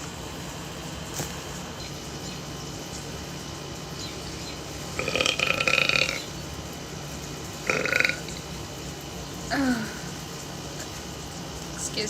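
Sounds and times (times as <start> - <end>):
woman belching: 5.0 - 6.2, 7.6 - 8.4, 9.5 - 10.1.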